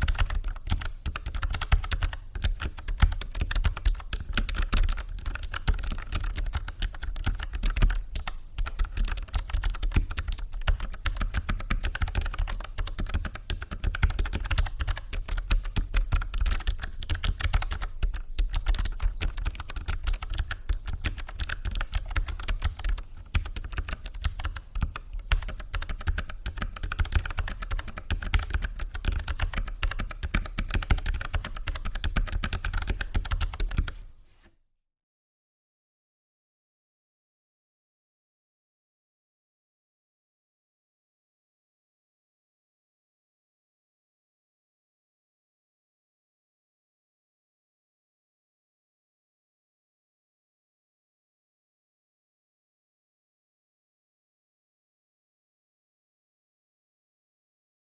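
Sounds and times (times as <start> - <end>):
rapid clicky keyboard typing: 0.0 - 34.1.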